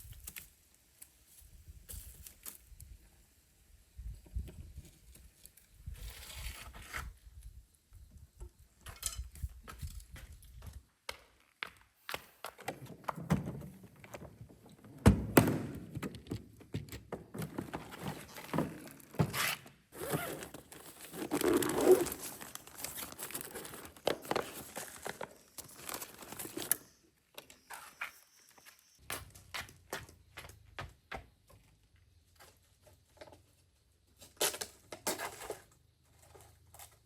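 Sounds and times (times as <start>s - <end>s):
crinkling rustling handling noise: 20.0s - 26.9s.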